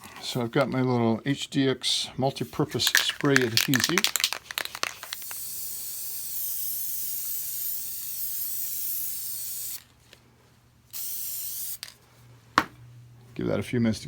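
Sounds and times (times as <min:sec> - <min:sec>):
aerosol can spraying: 0:02.8 - 0:09.9, 0:10.9 - 0:12.0.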